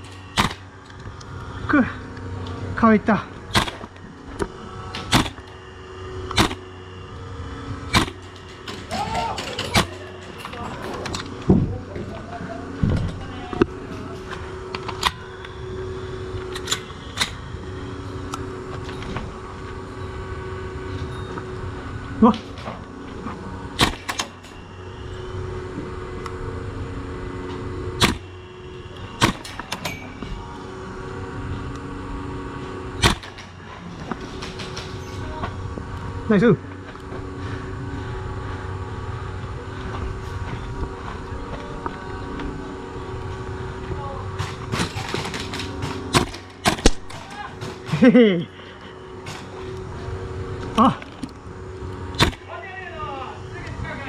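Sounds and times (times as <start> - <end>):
steady low hum: 0.0 - 54.0
airsoft gun shots: 0.3 - 0.6, 3.5 - 3.9, 5.0 - 5.4, 6.4 - 6.6, 7.9 - 8.2, 23.8 - 24.3, 28.0 - 28.3, 29.2 - 29.7, 33.0 - 33.4, 44.8 - 47.2, 52.2 - 52.5.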